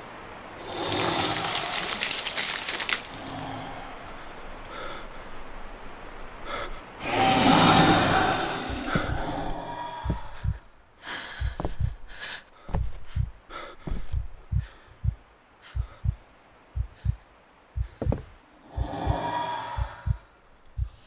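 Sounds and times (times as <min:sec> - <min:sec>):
heavy breathing: 0:03.2 - 0:16.2, 0:16.8 - 0:21.0
heartbeat thumps: 0:08.7 - 0:21.0.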